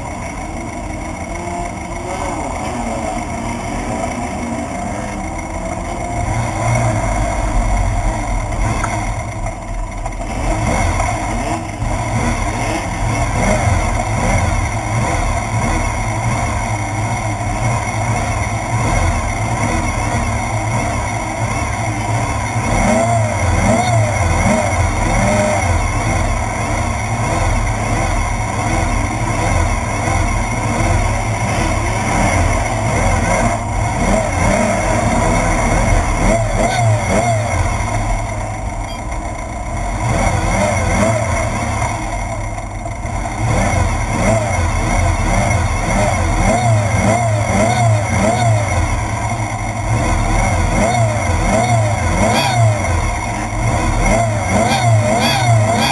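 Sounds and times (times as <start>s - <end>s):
heavy low rumble: 0.0s - 18.8s
buggy engine revving: 0.0s - 55.9s.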